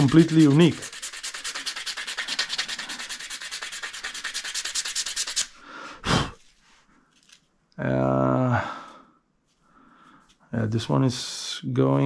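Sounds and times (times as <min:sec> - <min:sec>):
sandpaper rubbing on wood: 0:00.0 - 0:05.6.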